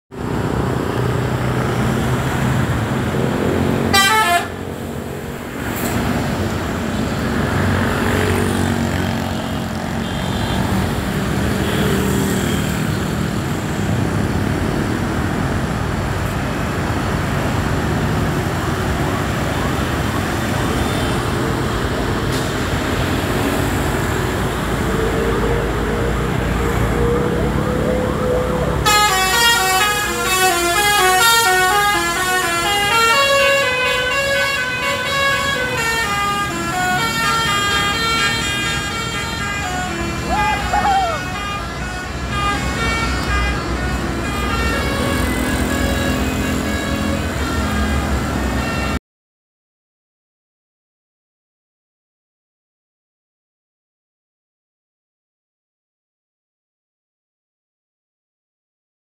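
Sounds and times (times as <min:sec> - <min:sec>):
bus engines: 0:00.1 - 0:49.0
road traffic: 0:00.1 - 0:49.0
musical air horn: 0:03.9 - 0:04.6, 0:28.8 - 0:49.0.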